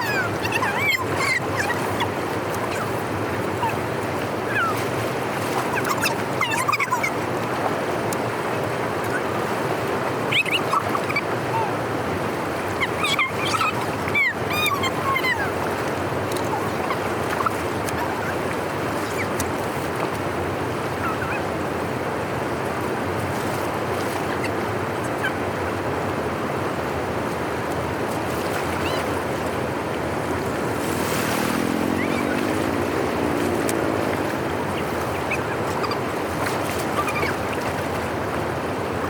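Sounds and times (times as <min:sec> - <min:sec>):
flowing water: 0:00.0 - 0:39.0
sliding bird calls: 0:30.4 - 0:37.6.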